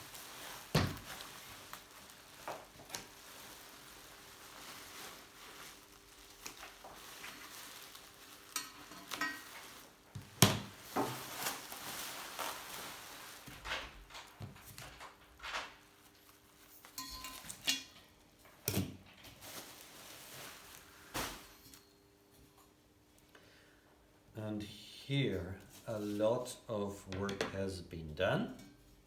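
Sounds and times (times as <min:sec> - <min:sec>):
bicycle frame knocks and clinks: 0:16.8 - 0:19.0.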